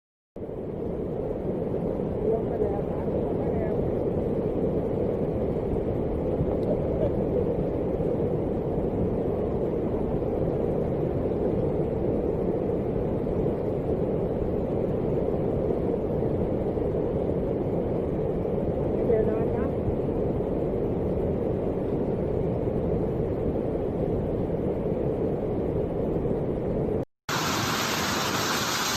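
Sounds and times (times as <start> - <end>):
floodwater rushing: 27.3 - 28.9.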